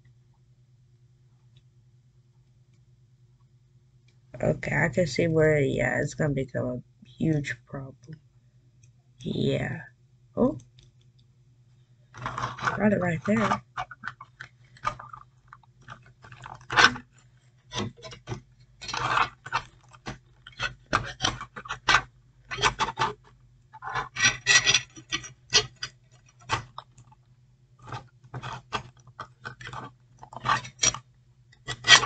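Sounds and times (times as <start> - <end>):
plastic figure clicking and scraping: 12.1 - 27.2, 27.8 - 32.0.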